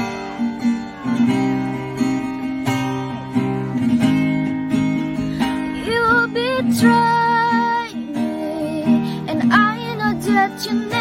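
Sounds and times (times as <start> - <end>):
acoustic guitar strumming: 0.0 - 11.0
woman singing: 5.4 - 11.0.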